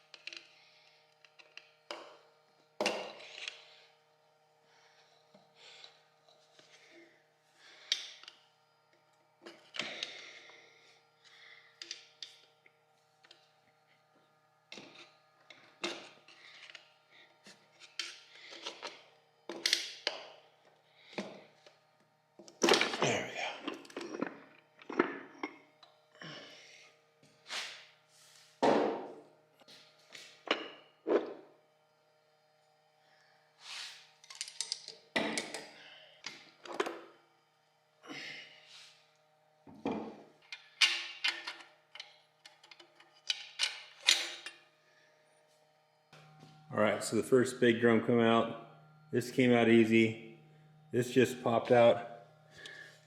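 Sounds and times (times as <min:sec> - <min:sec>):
metal parts clinking and scraping: 0:34.2 - 0:35.6.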